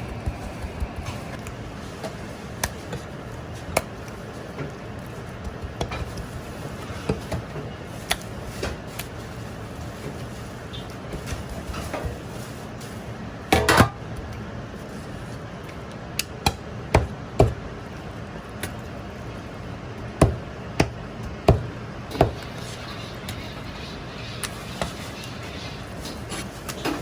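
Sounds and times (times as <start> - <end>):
steady low hum: 0.0 - 5.8
kitchen utensils knocking: 21.5 - 23.3.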